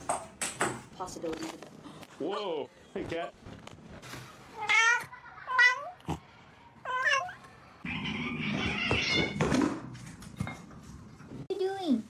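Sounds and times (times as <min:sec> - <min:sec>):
cat meowing: 0:06.8 - 0:07.4.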